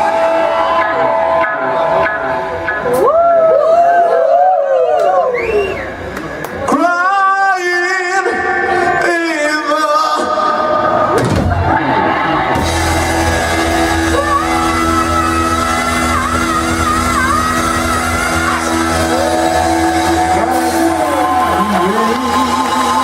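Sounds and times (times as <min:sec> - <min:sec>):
live rock band: 0:00.0 - 0:03.6, 0:10.2 - 0:23.0.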